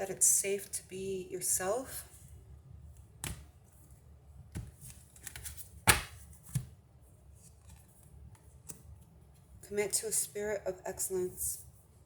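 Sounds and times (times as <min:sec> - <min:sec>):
cards tapping and flicking: 0:03.2 - 0:03.5, 0:04.6 - 0:06.7.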